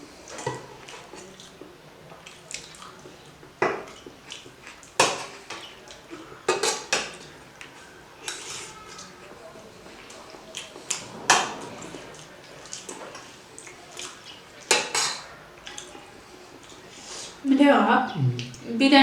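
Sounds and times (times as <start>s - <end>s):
cutlery clinking on plates: 0.3s - 1.5s, 2.2s - 9.4s, 14.0s - 15.9s.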